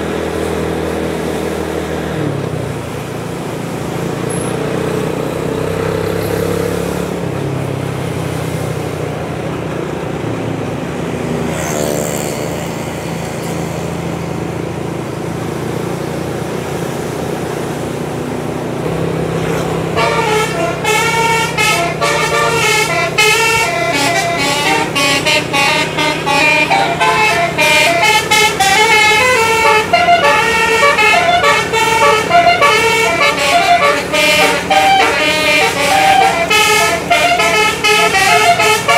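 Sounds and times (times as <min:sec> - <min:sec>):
heavy vehicle engine running: 0:00.0 - 0:38.9
musical air horn tune: 0:19.9 - 0:38.9.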